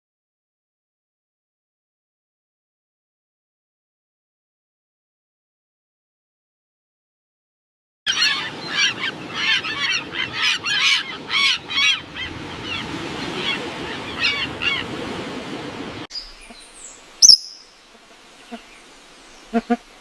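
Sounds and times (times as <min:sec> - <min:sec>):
birds honking calls: 0:08.1 - 0:15.0, 0:16.1 - 0:20.0.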